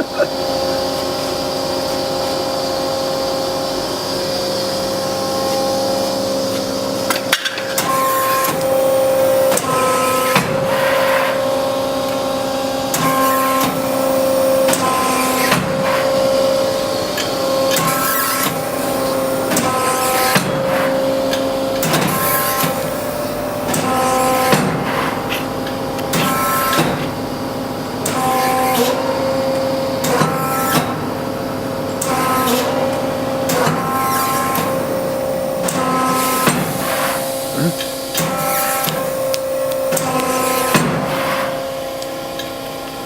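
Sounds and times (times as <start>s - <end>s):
hydraulic pump whining: 0.0s - 43.0s.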